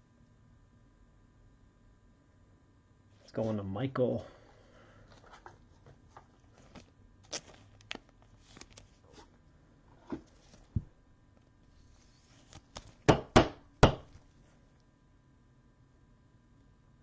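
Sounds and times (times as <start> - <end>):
cards clicking and tapping: 12.4 - 14.2
loud knocks on table: 13.1 - 14.1.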